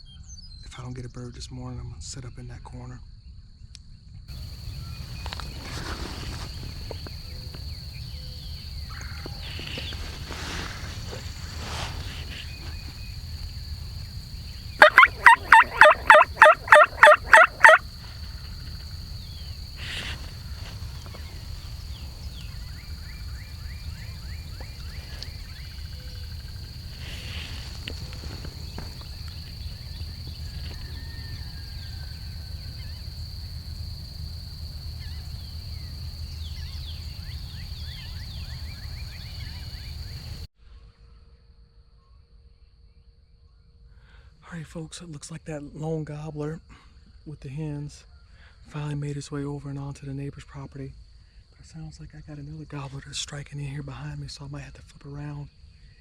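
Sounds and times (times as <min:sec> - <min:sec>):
high insect drone: 0:04.4 - 0:40.5
turkey yelps: 0:14.8 - 0:17.8.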